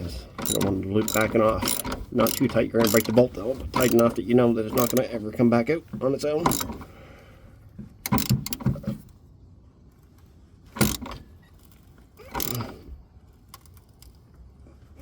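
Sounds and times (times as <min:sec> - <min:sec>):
ratchet metallic clicks: 0:00.4 - 0:05.1, 0:06.4 - 0:06.8, 0:08.0 - 0:08.7, 0:10.8 - 0:12.7
ratchet rattle: 0:00.4 - 0:05.1, 0:06.4 - 0:06.8, 0:08.0 - 0:08.7, 0:10.8 - 0:12.8.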